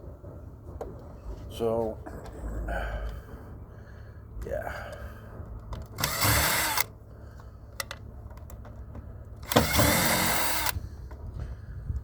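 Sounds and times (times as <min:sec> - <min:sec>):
power screwdriver running: 0:05.9 - 0:06.9, 0:09.4 - 0:10.8.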